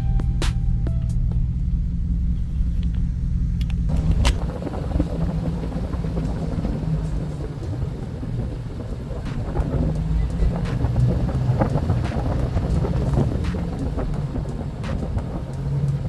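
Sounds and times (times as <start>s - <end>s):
pickup truck engine and tyres rumbling: 0.0s - 16.0s.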